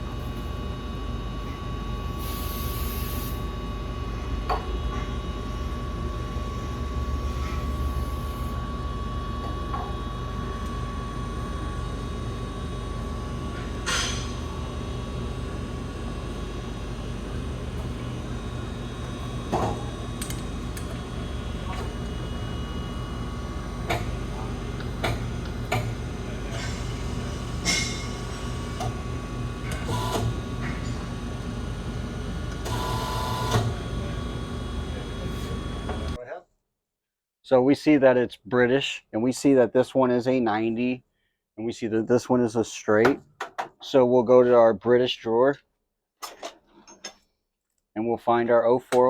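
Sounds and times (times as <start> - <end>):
mechanical hum and rumble: 0.0 - 36.4.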